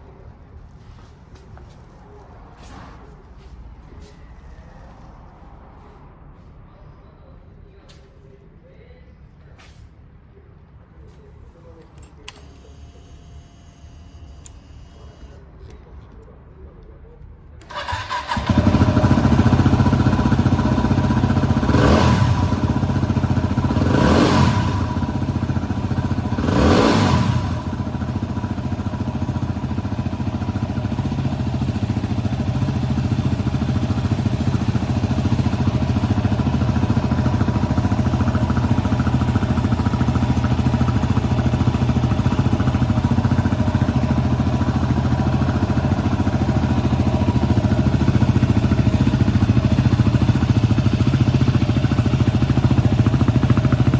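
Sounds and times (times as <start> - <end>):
motorcycle engine revving and idling: 17.7 - 53.9.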